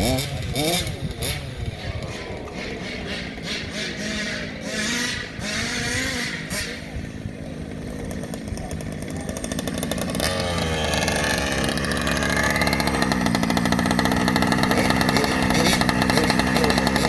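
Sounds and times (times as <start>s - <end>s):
rc car engine revving: 0.0s - 17.0s.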